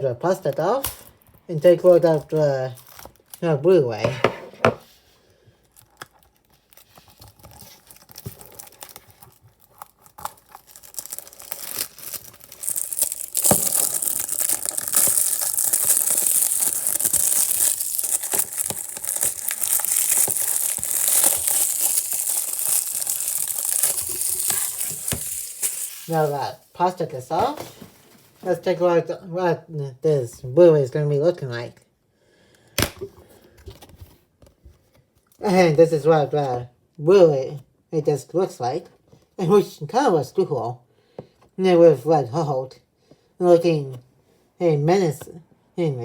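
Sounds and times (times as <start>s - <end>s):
plastic shrink-wrap crinkling: 5.7s - 28.6s.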